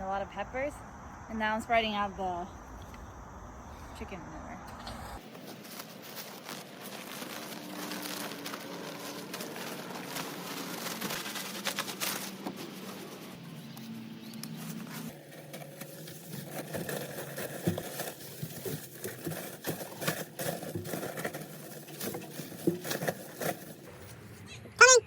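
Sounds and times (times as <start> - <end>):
manure rustling and pattering: 5.2 - 24.4
light scrapes and knocks: 14.4 - 24.3.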